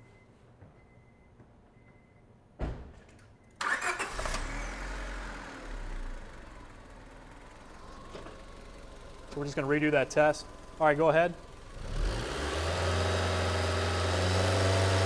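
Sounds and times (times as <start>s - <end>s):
car engine starting and idling: 3.6s - 15.0s.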